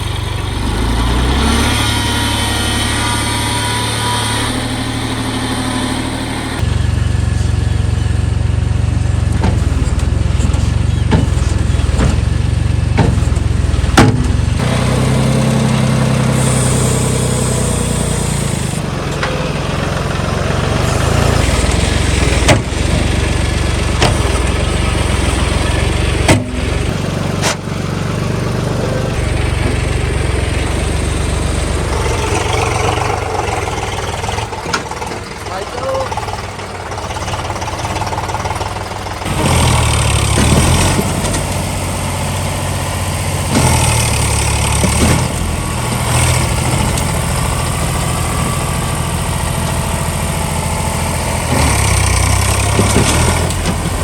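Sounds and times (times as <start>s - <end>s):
tractor diesel engine running: 0.0s - 54.0s
sharp metal knocks: 9.4s - 14.7s.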